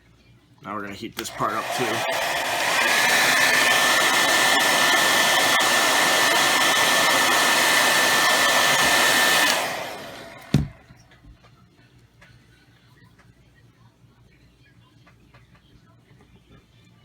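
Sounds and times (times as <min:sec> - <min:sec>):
hair dryer blowing with whine: 0:01.2 - 0:11.1
thump: 0:10.5 - 0:10.8.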